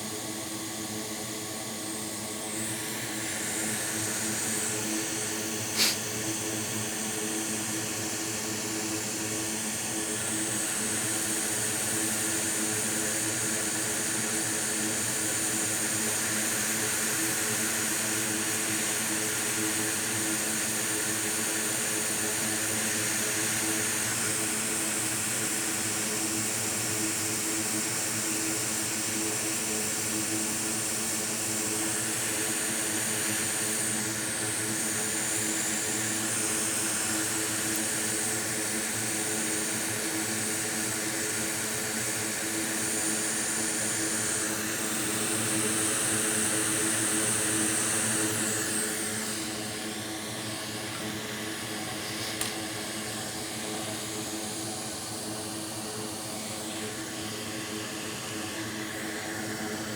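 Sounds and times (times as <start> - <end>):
hot air station blowing: 2.5 - 6.4, 31.7 - 55.2.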